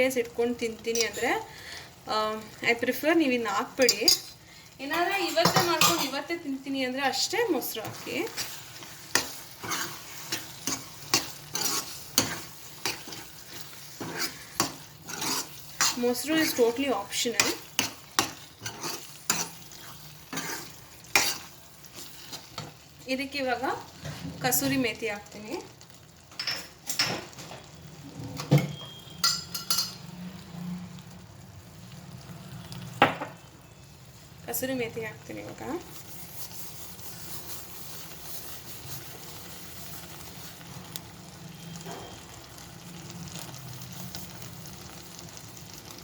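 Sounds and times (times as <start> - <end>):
paste sizzling in oil: 0.0 - 28.1, 33.6 - 46.0
spoon scraping and knocking a pan: 5.2 - 6.2, 7.6 - 22.8, 26.3 - 30.0.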